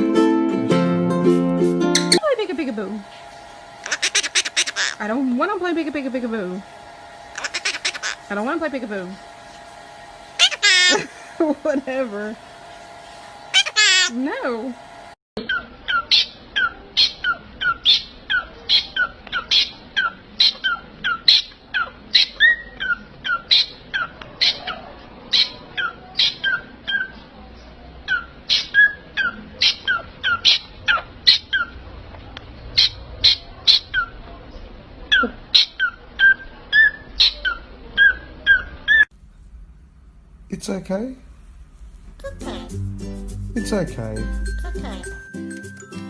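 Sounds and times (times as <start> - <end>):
small parrot calling: 3.8 - 5.1, 7.3 - 8.3, 10.4 - 11.2, 13.5 - 14.2, 15.4 - 27.2, 28.1 - 31.8, 32.8 - 34.2.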